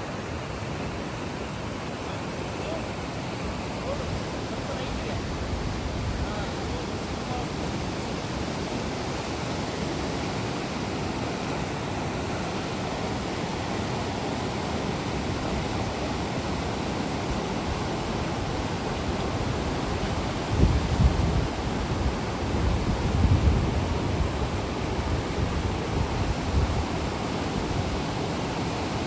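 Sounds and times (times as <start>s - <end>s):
stream water rushing: 0.0s - 29.0s.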